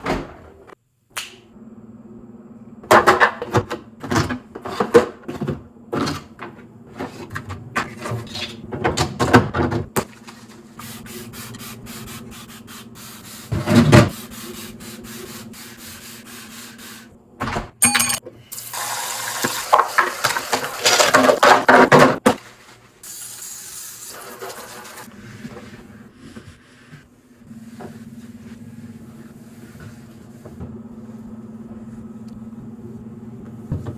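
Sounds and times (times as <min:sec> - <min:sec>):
short ringing clink: 0:17.8 - 0:18.2
containers knocking and clattering: 0:19.4 - 0:22.4.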